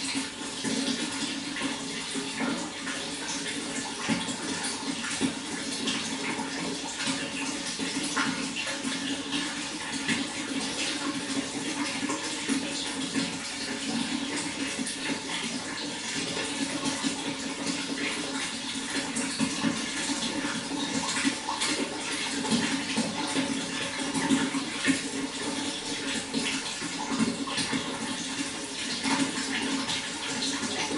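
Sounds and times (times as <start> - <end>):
running water splashing: 0.0 - 30.9.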